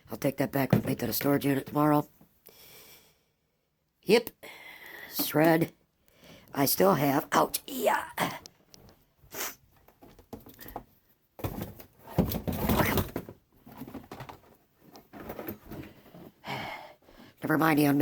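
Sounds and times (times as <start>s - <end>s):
rustling of handled objects: 8.6s - 16.4s.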